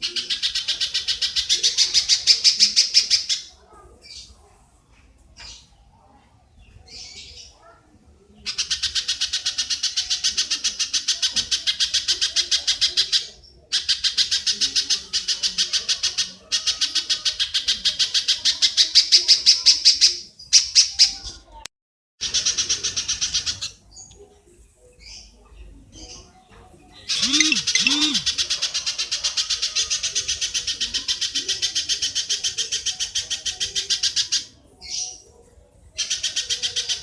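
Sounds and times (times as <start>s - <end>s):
high-pitched chattering call: 27.0s - 35.0s.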